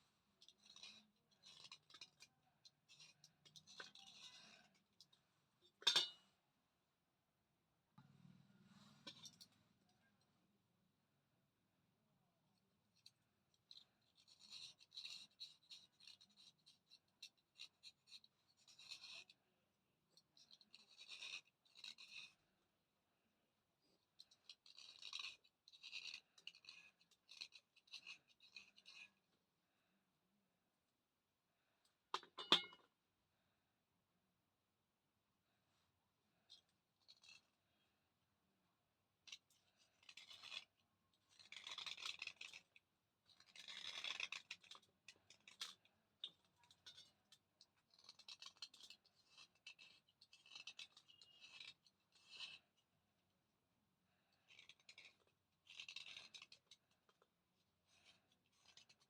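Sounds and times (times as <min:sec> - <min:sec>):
slate pencil scratching: 0:00.4 - 0:04.8, 0:13.7 - 0:19.4, 0:20.4 - 0:22.4, 0:24.2 - 0:29.2, 0:39.6 - 0:45.6, 0:47.8 - 0:52.8, 0:54.3 - 0:56.9, 0:57.8 - 0:59.0.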